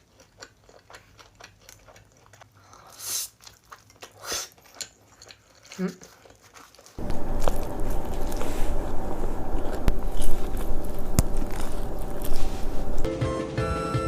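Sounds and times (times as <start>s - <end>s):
biting and chewing food: 0.0s - 13.1s
crunchy clicks: 7.0s - 13.1s
music: 13.1s - 14.0s.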